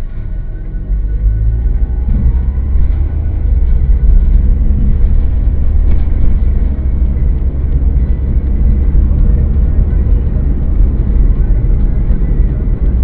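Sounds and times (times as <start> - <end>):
car engine and tyre rumble: 0.0 - 13.0.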